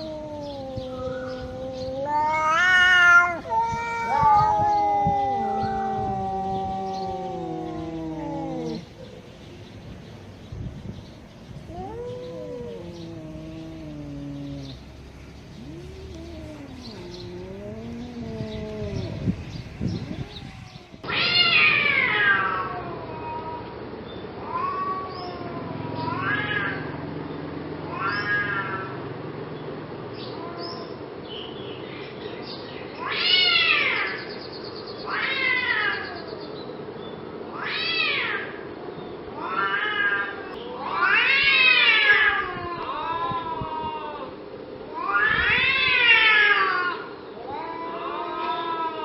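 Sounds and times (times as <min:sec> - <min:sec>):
angry cat yowling: 0:00.0 - 0:09.3, 0:11.6 - 0:23.6, 0:24.5 - 0:27.0, 0:27.8 - 0:29.0, 0:39.4 - 0:49.0.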